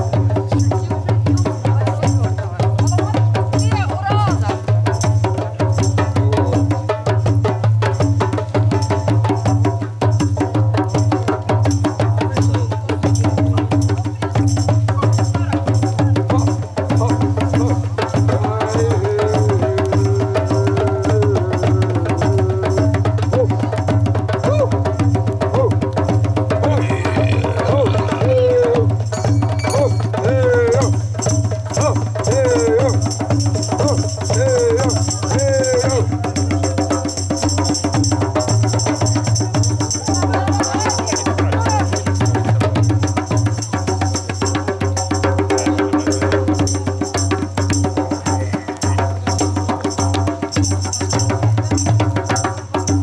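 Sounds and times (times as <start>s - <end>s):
fast dense drumming: 0.0s - 53.0s
voice calling bending notes: 26.6s - 30.9s.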